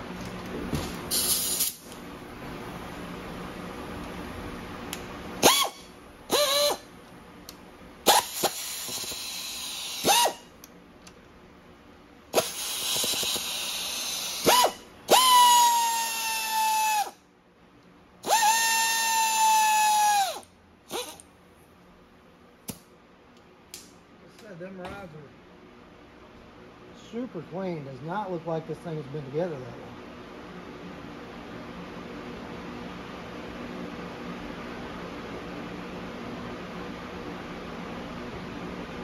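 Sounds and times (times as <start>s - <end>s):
power tool motor whining: 5.4s - 6.8s, 8.1s - 10.4s, 12.4s - 17.2s, 18.2s - 21.2s.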